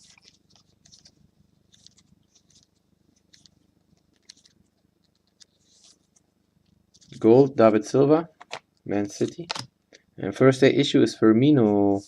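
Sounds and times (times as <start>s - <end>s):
trading cards rustling: 0.0s - 6.2s
low room hum: 0.0s - 12.0s.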